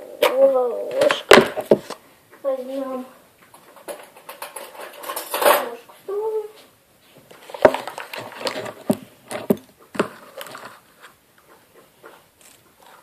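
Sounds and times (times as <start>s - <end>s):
small clicks and knocks: 3.4s - 5.7s.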